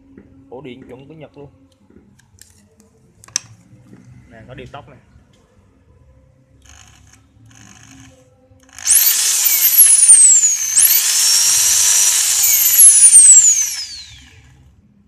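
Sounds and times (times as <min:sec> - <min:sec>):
hammer drill motor whine: 0:06.7 - 0:14.6.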